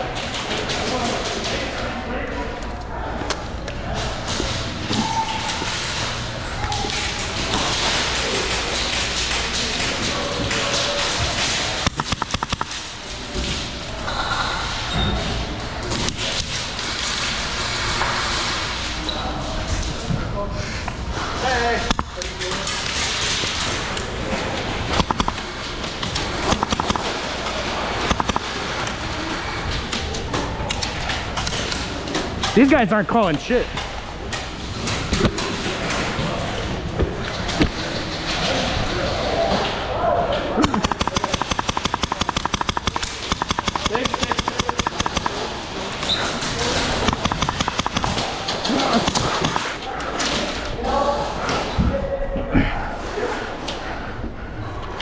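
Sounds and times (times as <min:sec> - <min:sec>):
airsoft guns firing: 0:10.7 - 0:12.9, 0:24.8 - 0:28.9, 0:40.6 - 0:49.8.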